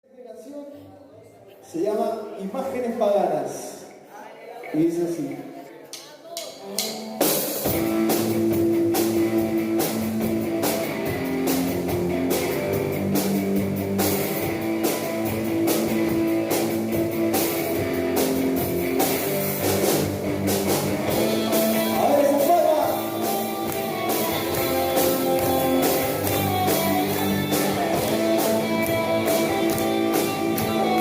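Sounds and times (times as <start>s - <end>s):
rock band playing: 6.6s - 31.0s.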